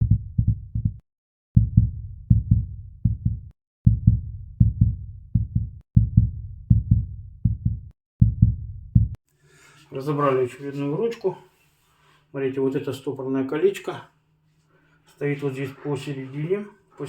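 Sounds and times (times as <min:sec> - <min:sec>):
intro music with bass drum: 0:01.6 - 0:09.1.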